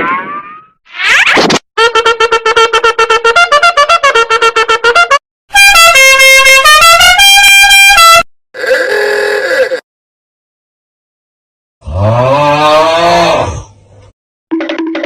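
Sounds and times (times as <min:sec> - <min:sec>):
horn-like tune of held notes: 0:05.0 - 0:08.2.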